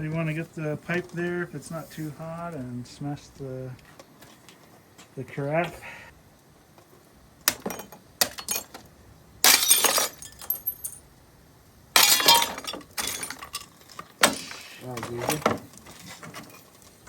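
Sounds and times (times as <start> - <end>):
glass shattering and tinkling: 7.6 - 8.7, 9.4 - 11.0, 12.0 - 13.8.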